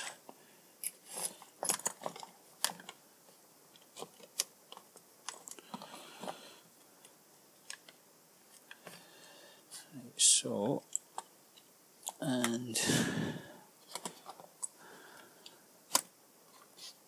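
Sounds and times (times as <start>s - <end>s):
plastic parts clicking: 1.6s - 3.0s, 3.8s - 6.3s, 13.9s - 14.8s, 15.9s - 16.1s.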